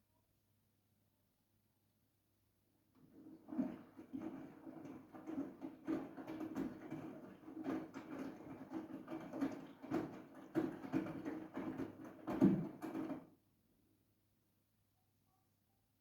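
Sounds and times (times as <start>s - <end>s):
laundry tumbling in washing machine: 2.9s - 13.4s.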